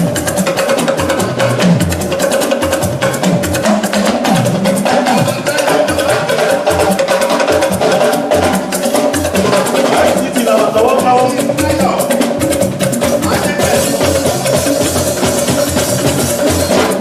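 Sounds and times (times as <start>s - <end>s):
fast busy percussion: 0.0s - 17.0s
pulsing bass line: 9.2s - 17.0s.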